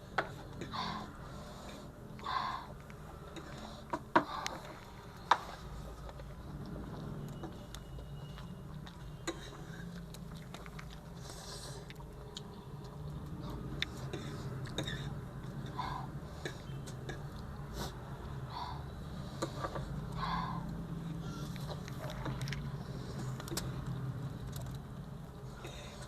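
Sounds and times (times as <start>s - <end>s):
breathy sniff: 0.3s - 6.0s, 11.1s - 12.0s, 13.8s - 21.6s, 25.4s - 26.0s.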